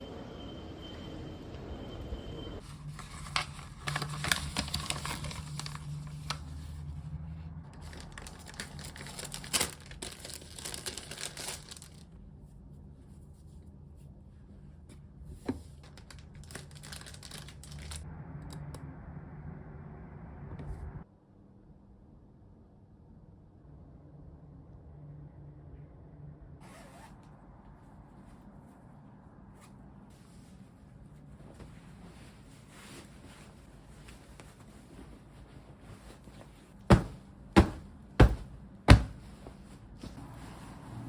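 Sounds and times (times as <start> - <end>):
material crinkling and rustling: 2.6 - 12.2, 15.1 - 18.0, 29.5 - 41.0.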